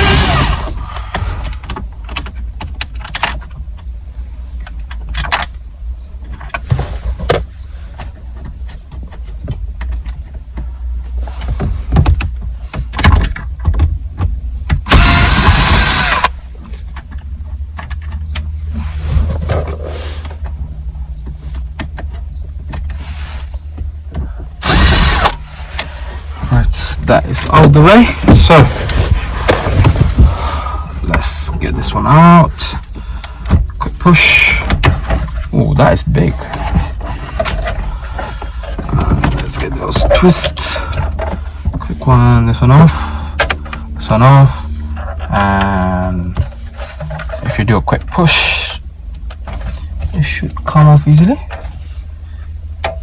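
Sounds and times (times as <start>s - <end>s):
loud noisy burst: 0.0s - 0.8s, 14.9s - 16.3s, 24.6s - 25.4s
steady low hum: 0.0s - 53.0s.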